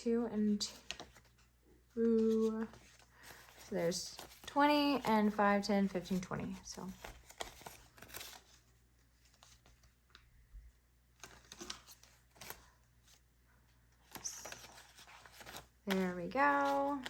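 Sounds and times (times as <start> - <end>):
paper rustling and flicking: 14.0 - 17.0.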